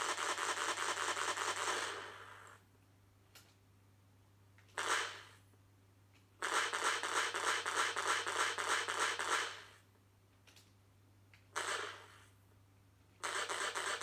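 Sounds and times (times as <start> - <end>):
electronic laser gun shots: 0.0 - 2.6, 4.8 - 5.4, 6.4 - 9.8, 11.6 - 12.2, 13.2 - 14.0.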